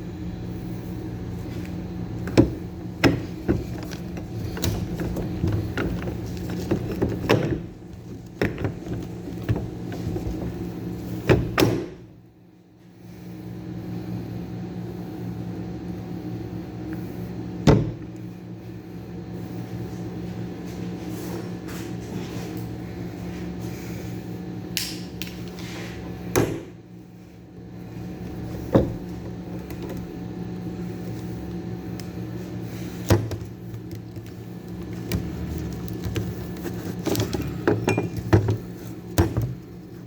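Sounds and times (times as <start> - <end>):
steady mechanical hum: 0.0 - 40.0
tools knocking and clanking: 37.0 - 38.6.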